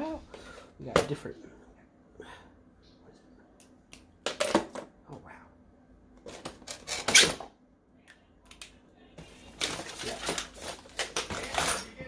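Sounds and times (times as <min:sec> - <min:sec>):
art supplies clattering: 0:09.2 - 0:12.0
packaging rustling and clicking: 0:09.5 - 0:11.9.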